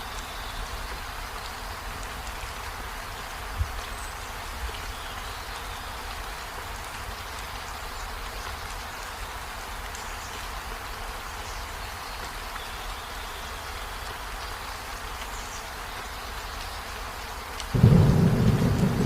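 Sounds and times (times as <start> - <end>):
rain hissing: 0.0 - 19.0
thunder rumble: 17.7 - 19.0.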